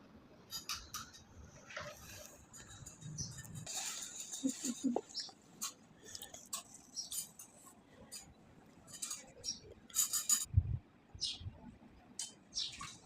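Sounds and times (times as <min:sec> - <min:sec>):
utensils clinking against a dish: 0:08.9 - 0:10.5.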